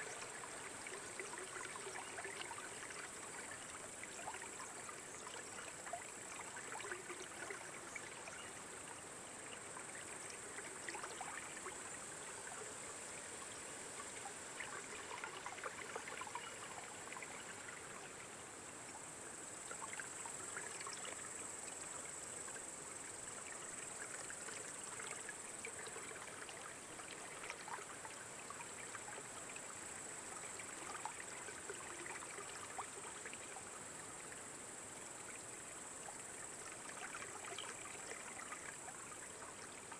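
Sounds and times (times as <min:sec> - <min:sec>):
small splashes and bubbling: 0:00.0 - 0:39.9
water trickling: 0:00.0 - 0:39.9.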